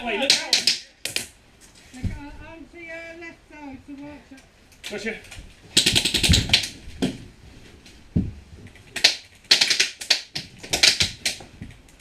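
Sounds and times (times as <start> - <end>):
airsoft guns firing bursts: 5.8 - 6.8, 9.0 - 11.2.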